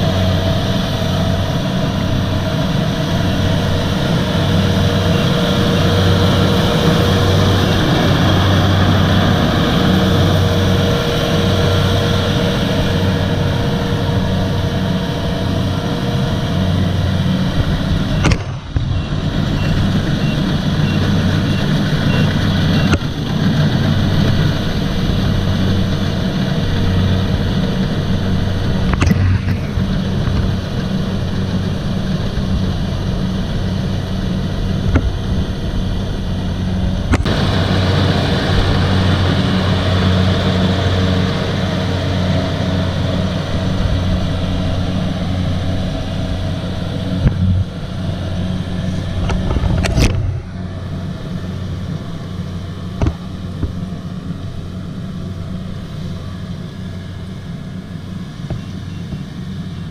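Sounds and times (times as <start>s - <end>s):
diesel engine running under load: 0.0s - 59.9s
sharp knocks: 53.0s - 53.8s.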